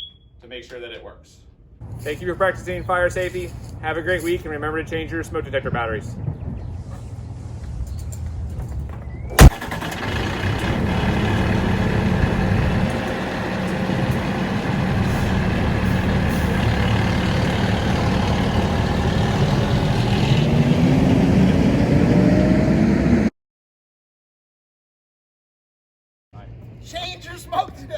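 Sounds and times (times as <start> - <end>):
sharp loud click: 9.3 - 9.9
vehicle engine running: 9.4 - 23.3.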